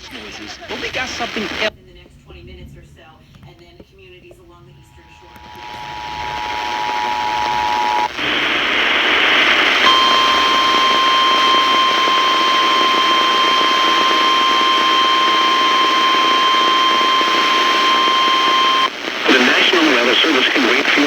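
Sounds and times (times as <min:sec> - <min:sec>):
loud hiss-like noise: 0:05.0 - 0:21.0
two-tone attention signal: 0:09.4 - 0:20.2
steady single-pitch alert tone: 0:09.5 - 0:18.9.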